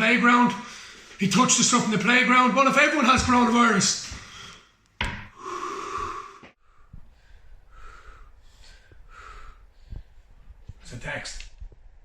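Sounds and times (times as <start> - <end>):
person breathing panicky: 5.3 - 10.4.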